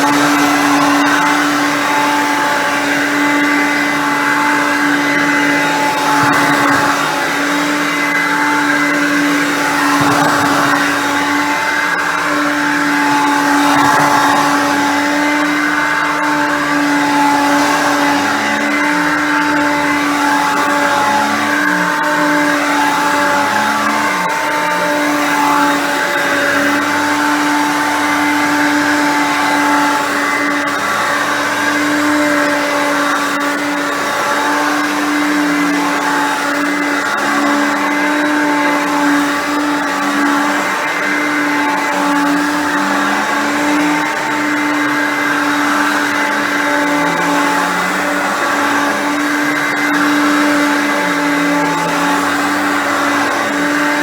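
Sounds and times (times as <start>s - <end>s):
vacuum cleaner motor screaming: 0.0s - 54.0s.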